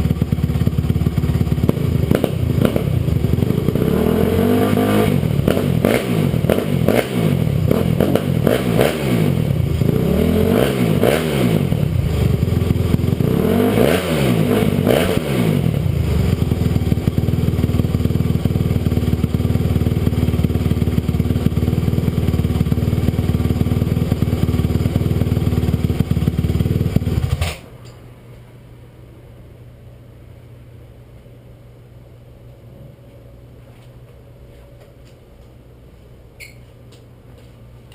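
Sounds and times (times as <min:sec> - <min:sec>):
motorcycle engine revving and idling: 0:00.0 - 0:27.6.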